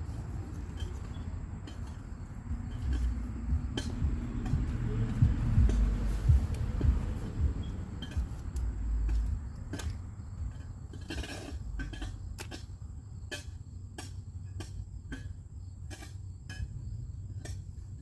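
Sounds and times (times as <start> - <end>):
low rumble: 0.0 - 12.4.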